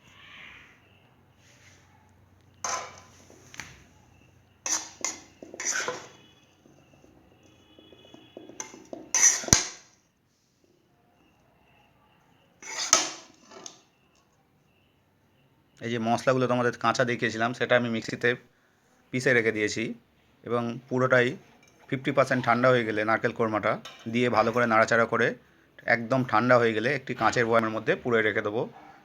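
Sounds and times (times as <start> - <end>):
metal utensils and pans clattering: 2.6 - 3.2, 4.6 - 9.9, 12.6 - 13.8, 21.5 - 22.7, 23.8 - 24.6.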